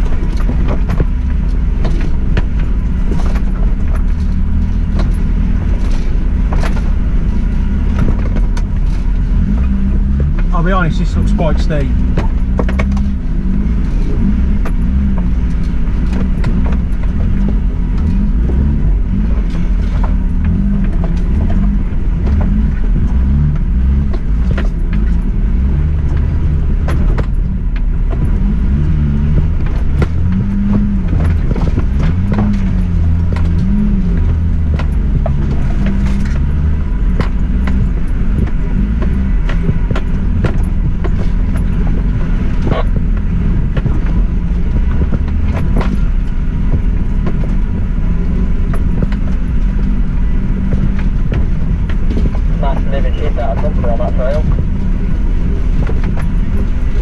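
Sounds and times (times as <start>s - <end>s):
small knocks and rattles: 0.0s - 10.9s, 11.9s - 52.6s
car engine at low revs: 0.0s - 57.0s.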